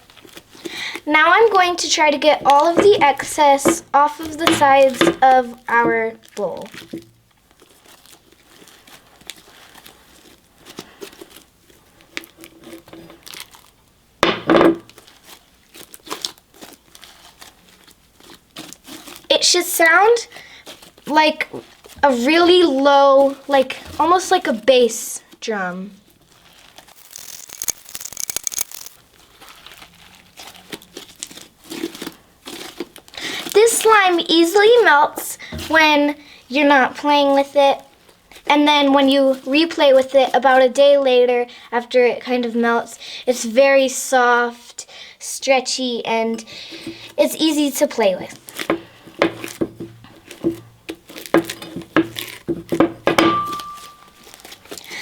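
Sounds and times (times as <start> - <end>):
slime crackling and squishing: 0.0 - 13.9, 14.9 - 24.4, 26.1 - 35.1, 49.4 - 52.7, 53.8 - 55.0
slime squelch: 26.3 - 35.0.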